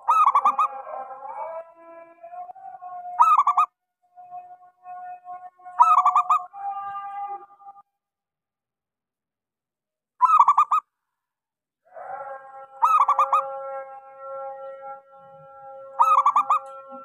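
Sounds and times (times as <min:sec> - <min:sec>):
dove cooing: 0:00.0 - 0:00.8, 0:03.2 - 0:03.7, 0:05.8 - 0:06.5, 0:12.8 - 0:13.8, 0:15.3 - 0:17.0.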